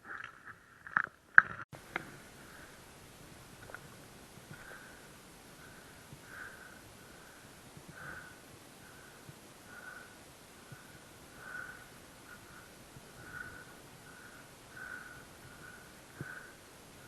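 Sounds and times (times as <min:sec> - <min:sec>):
person breathing hard: 0:01.8 - 0:03.0, 0:03.6 - 0:17.0.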